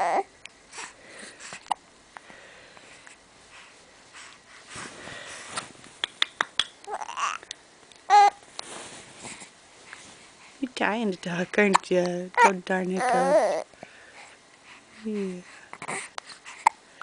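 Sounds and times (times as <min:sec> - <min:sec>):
faint baby vocal sounds: 0:00.0 - 0:01.8, 0:06.8 - 0:08.4, 0:11.6 - 0:16.8.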